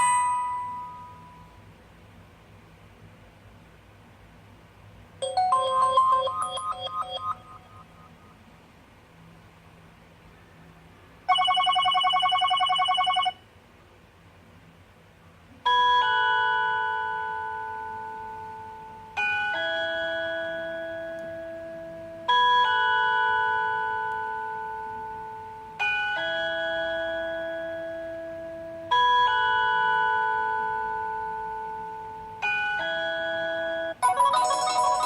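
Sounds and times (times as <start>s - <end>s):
chime ringtone: 0.0s - 1.5s, 5.2s - 8.3s, 11.3s - 13.4s, 32.8s - 35.0s
fast electronic ringtone trill: 5.2s - 8.4s, 11.3s - 13.4s, 34.0s - 35.0s.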